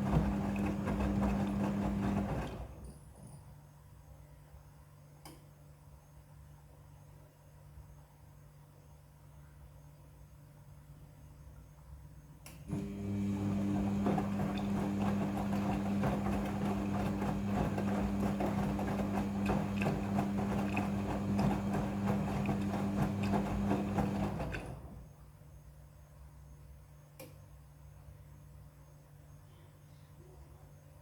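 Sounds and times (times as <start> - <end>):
washing machine motor hum: 0.0 - 3.0, 12.6 - 25.1
load sloshing and knocking: 12.8 - 25.0.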